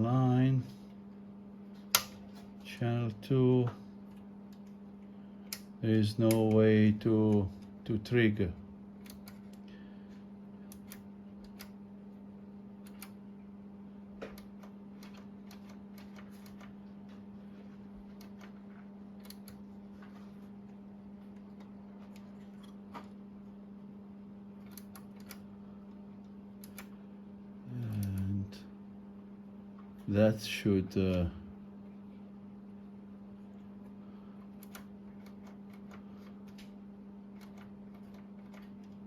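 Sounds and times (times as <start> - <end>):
low electrical hum: 0.0 - 39.0
switches and knobs clicking: 1.8 - 2.9, 3.6 - 8.2, 9.0 - 9.8, 10.6 - 11.8, 12.7 - 13.4, 14.1 - 23.2, 24.5 - 27.0, 27.7 - 28.6, 33.4 - 39.0.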